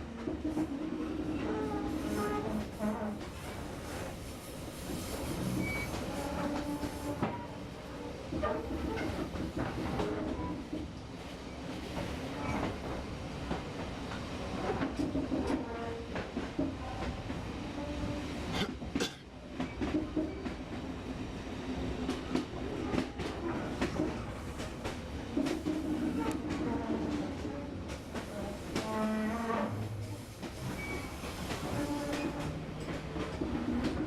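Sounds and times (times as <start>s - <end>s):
train rumbling on track: 0.0s - 34.0s
train wheels clicking over rails: 21.8s - 34.0s.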